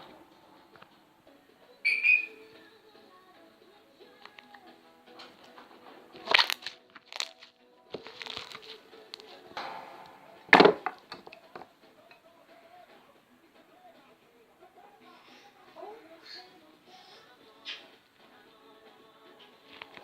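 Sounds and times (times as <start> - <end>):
faint background music: 0.0 - 20.0
slime crackling and crunching: 6.2 - 9.3.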